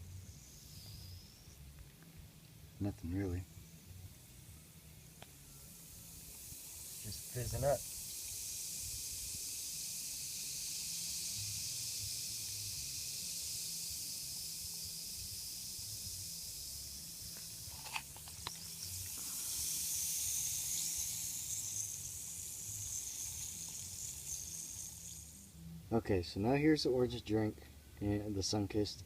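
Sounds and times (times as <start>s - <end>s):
soda fizzing in a cup: 17.4s - 25.4s.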